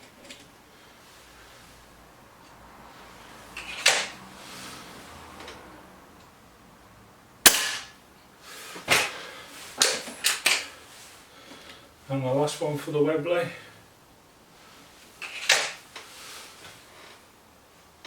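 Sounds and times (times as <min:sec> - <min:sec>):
air rifle firing crack: 0:07.4 - 0:08.0.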